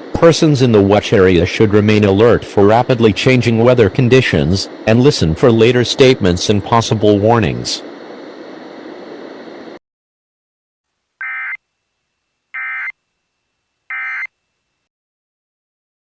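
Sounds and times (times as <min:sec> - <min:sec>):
steady hiss: 0:00.0 - 0:09.8
warbling data tone bursts: 0:11.2 - 0:11.6, 0:12.6 - 0:13.0, 0:13.9 - 0:14.3.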